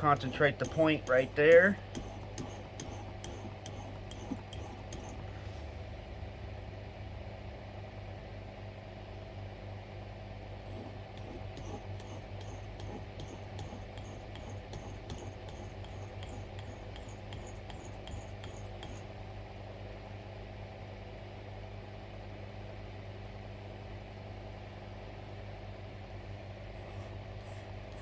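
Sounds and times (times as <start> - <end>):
knife scraping on sharpening stone: 0.0 - 5.2, 10.8 - 19.1
steady low hum: 0.0 - 28.0.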